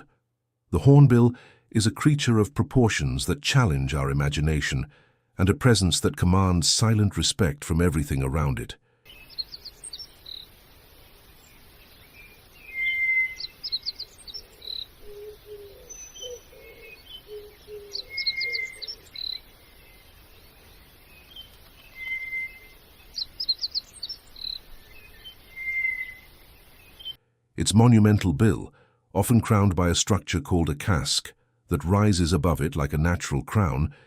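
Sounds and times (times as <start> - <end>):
birds chirping and whistling: 9.1 - 27.2.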